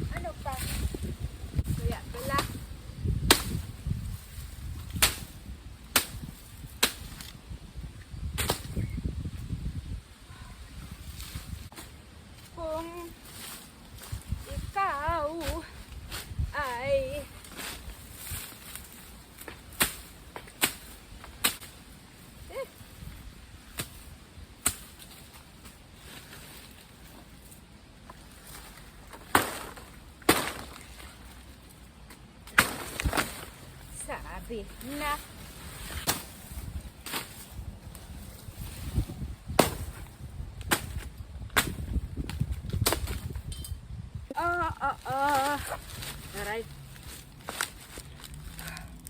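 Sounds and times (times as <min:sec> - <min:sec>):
machete chopping brush: 0:01.7 - 0:07.4, 0:08.3 - 0:08.8, 0:17.4 - 0:21.8, 0:23.7 - 0:26.7, 0:28.4 - 0:31.1, 0:32.1 - 0:34.1, 0:34.8 - 0:43.5, 0:45.3 - 0:48.8.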